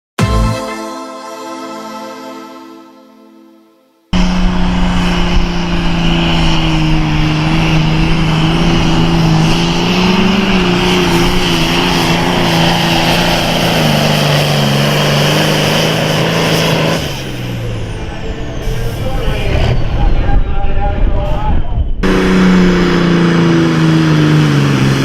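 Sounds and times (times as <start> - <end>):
diesel tractor engine under load: 4.2 - 20.0, 22.0 - 25.0.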